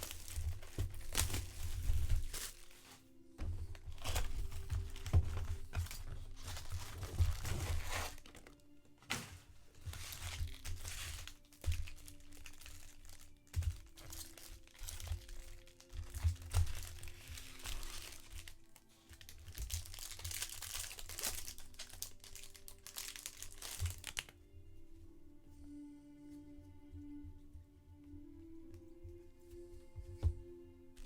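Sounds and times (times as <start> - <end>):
plastic wrappers tearing and crinkling: 0.0 - 24.4
soft background music: 0.0 - 31.0.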